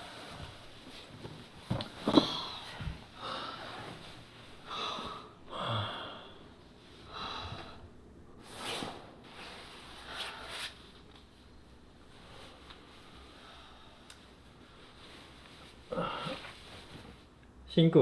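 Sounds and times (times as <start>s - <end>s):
person breathing heavily: 2.1s - 8.0s, 15.9s - 16.8s.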